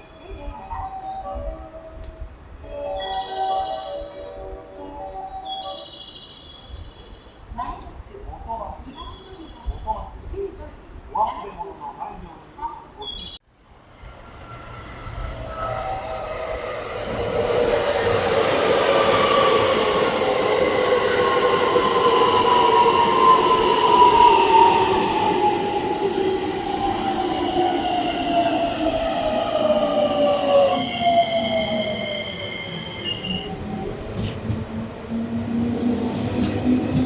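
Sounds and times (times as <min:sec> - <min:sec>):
train wheels rumbling on rails: 0:13.8 - 0:37.0.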